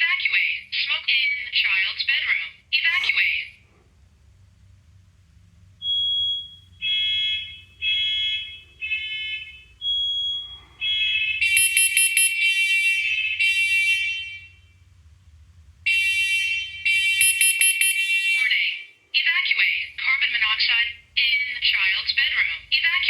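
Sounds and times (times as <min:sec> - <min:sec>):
second louder smoke alarm: 0:05.8 - 0:14.8, 0:15.9 - 0:18.5
smoke alarm high-pitched beeps: 0:05.8 - 0:14.8, 0:15.9 - 0:18.5.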